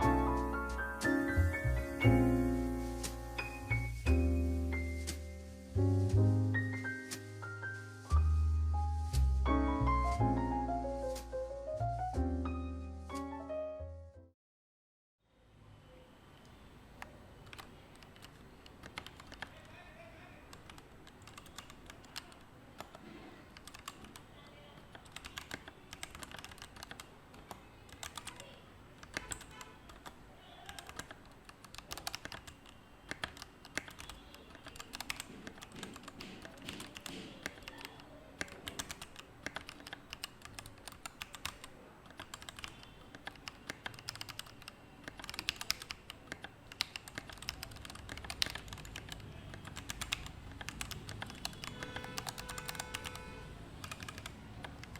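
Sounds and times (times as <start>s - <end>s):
steady low background noise: 0.0s - 13.5s
mechanical keyboard typing: 17.0s - 19.8s, 20.5s - 54.9s.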